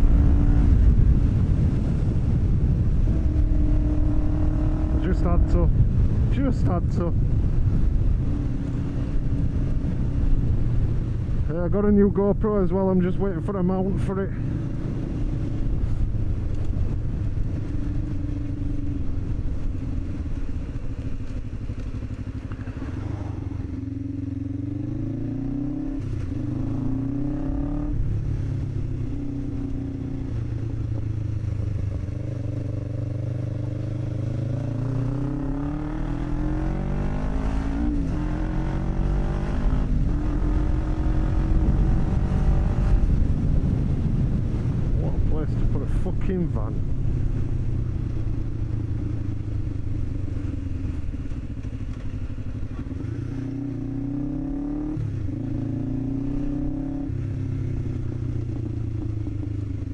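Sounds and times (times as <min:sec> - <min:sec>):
motorcycle engine shifting gears: 0:14.4 - 0:45.0, 0:46.7 - 0:59.9.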